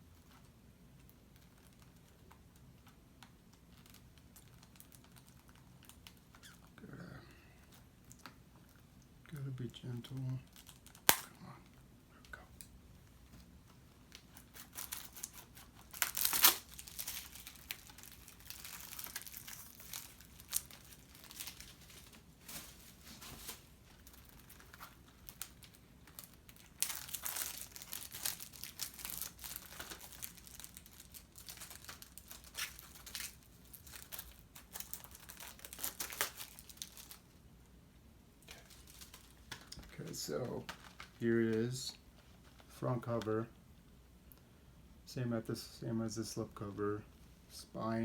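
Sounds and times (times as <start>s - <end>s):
plastic packaging crinkling: 0.3s - 6.6s, 10.4s - 11.3s, 13.4s - 37.3s, 38.4s - 42.7s.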